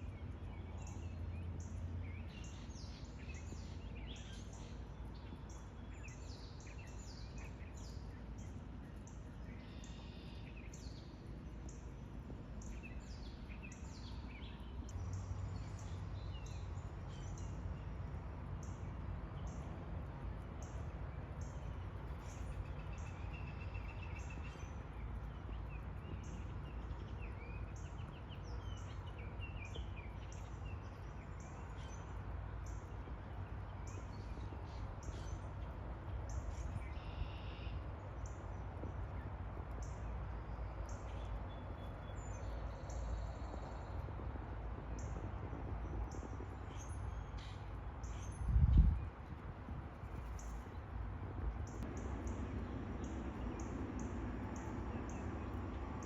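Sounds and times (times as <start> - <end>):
low background rumble: 0.0 - 56.0
birds chirping: 51.7 - 56.0.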